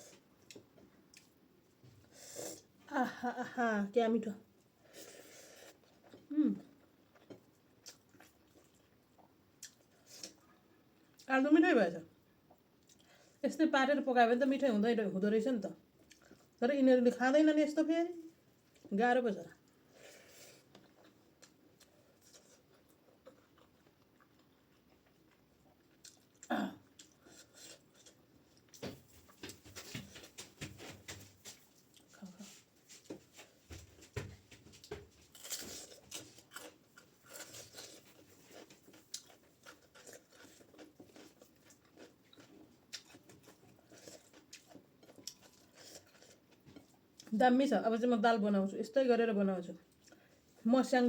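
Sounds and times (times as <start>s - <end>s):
person chewing food: 0.0s - 1.4s, 4.6s - 11.3s, 16.0s - 16.6s, 19.6s - 47.3s.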